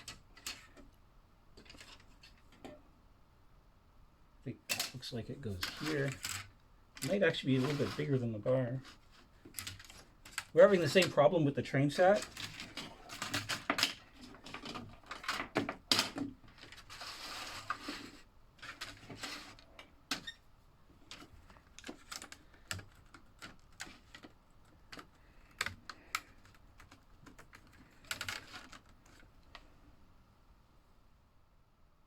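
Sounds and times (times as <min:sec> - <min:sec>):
short rustle: 0:05.4 - 0:14.6.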